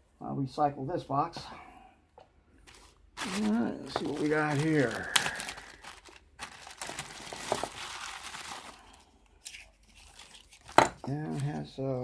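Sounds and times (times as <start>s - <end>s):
packaging crinkling and rustling: 2.6s - 11.8s.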